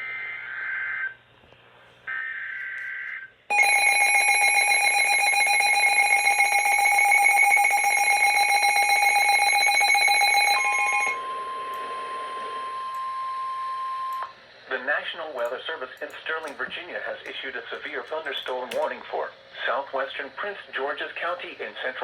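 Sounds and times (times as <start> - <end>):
harsh alert attention tone: 3.5 - 13.6
steady single tone: 10.7 - 14.3.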